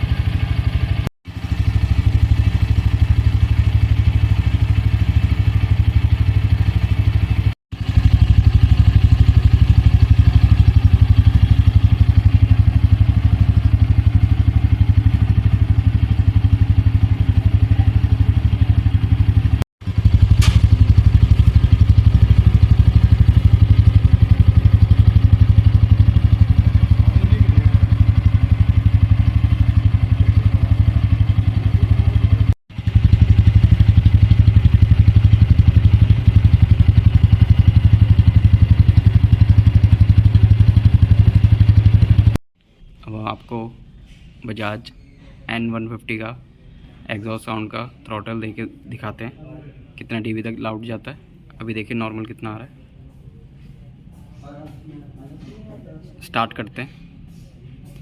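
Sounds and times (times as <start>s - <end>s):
motorcycle engine idling: 0.0s - 42.4s.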